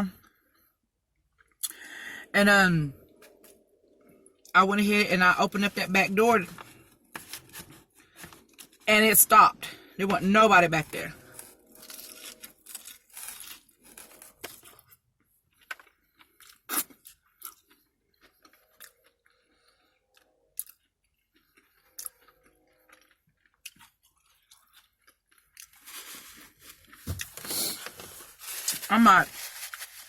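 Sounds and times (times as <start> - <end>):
chewing and crunching food: 0.2 - 1.9, 6.5 - 8.9, 11.0 - 30.0.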